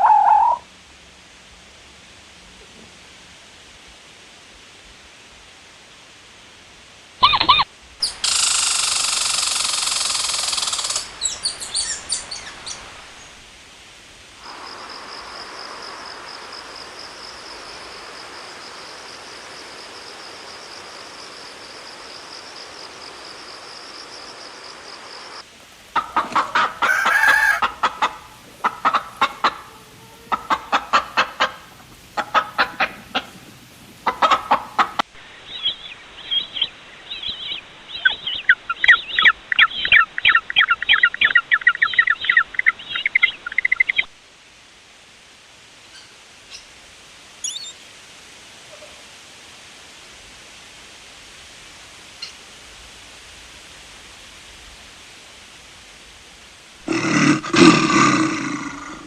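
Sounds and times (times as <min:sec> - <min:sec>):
loud noisy animal call: 0:00.0 - 0:00.6, 0:26.0 - 0:31.6, 0:56.8 - 0:59.0
chickens clucking: 0:07.2 - 0:07.7, 0:25.6 - 0:35.1.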